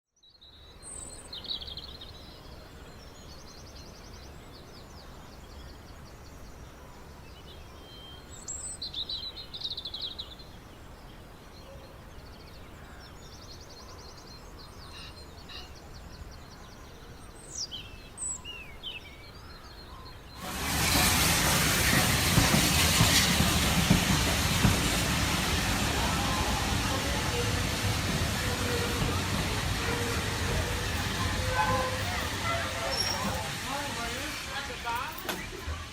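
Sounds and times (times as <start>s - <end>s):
small birds chirping and trilling: 22.4s - 35.9s.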